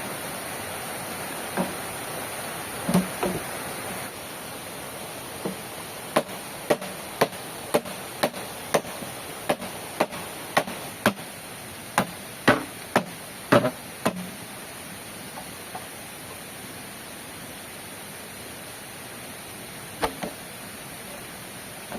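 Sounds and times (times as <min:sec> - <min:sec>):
tool chopping wood: 0:06.2 - 0:11.3, 0:12.0 - 0:14.3.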